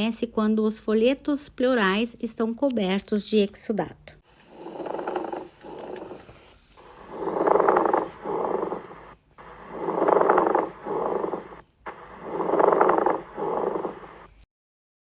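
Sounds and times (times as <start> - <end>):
pleural friction rub through stethoscope: 4.3 - 14.4.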